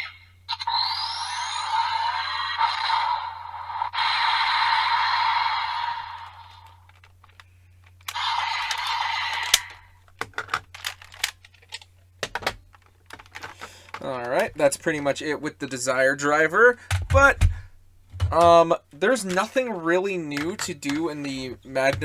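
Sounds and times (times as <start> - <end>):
toy electronic sound effects: 0.0 - 3.0, 8.1 - 9.9
plastic clicks: 6.6 - 15.3, 16.8 - 22.0.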